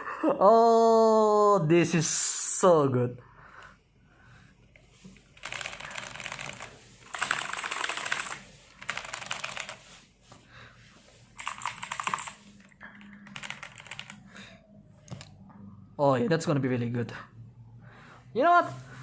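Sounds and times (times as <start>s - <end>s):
mechanical keyboard typing: 5.2s - 9.8s, 11.4s - 14.2s.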